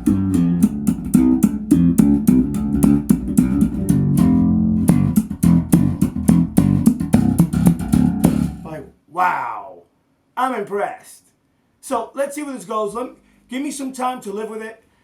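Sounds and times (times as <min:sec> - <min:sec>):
electric bass plucked notes: 0:00.0 - 0:08.9.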